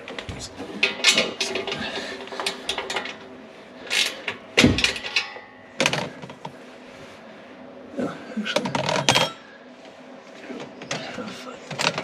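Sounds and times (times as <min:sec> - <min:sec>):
metal clanks and knocks: 0:04.0 - 0:06.4.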